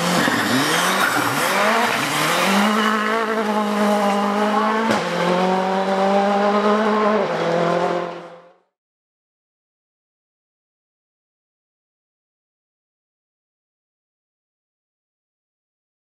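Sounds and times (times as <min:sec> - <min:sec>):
tyre squeal: 0:00.0 - 0:03.2
rally car engine revving: 0:00.0 - 0:08.7.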